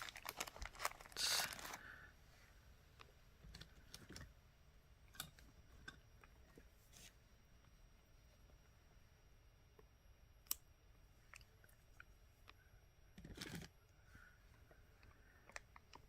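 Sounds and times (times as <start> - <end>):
plastic bag crinkle: 0.0 - 2.0.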